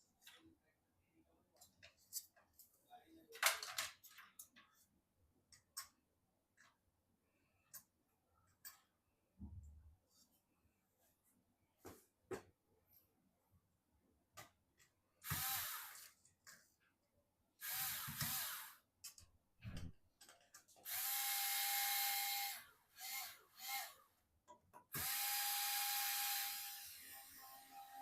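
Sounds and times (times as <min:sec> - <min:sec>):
electric screwdriver whining: 0:15.2 - 0:16.1, 0:17.6 - 0:18.8, 0:20.8 - 0:24.0, 0:24.9 - 0:28.0.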